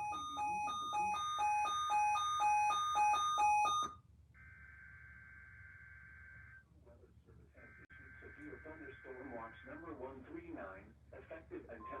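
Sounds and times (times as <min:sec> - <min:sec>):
alternating high and low beeps: 0:00.0 - 0:04.0.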